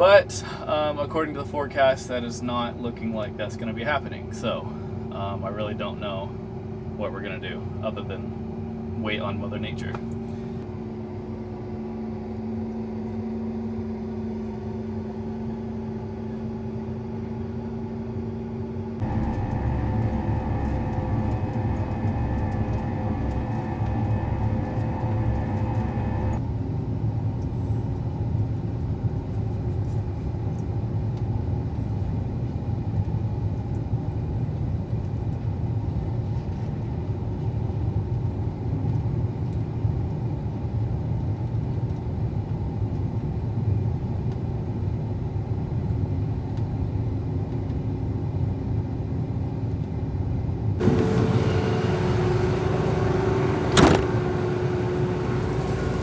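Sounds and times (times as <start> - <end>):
motor vehicle running: 19.0 - 26.4, 50.8 - 56.0.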